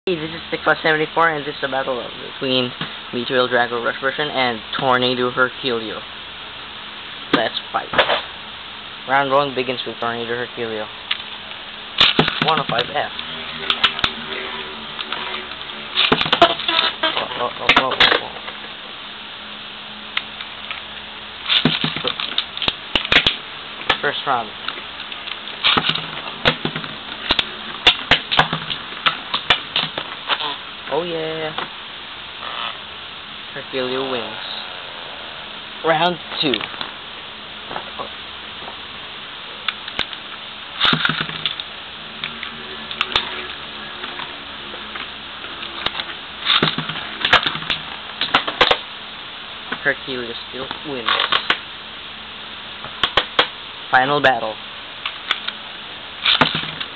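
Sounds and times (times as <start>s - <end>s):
spinning tops whirring: 10.7s - 18.9s.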